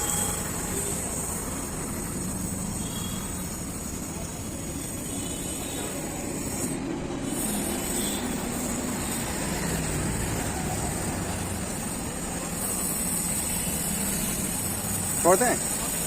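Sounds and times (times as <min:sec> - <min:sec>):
welding crackling hiss: 0:00.0 - 0:16.0.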